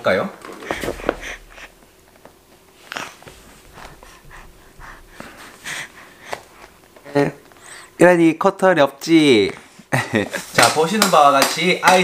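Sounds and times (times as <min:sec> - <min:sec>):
baby breathing and snuffling: 0:00.6 - 0:02.0, 0:02.8 - 0:06.8.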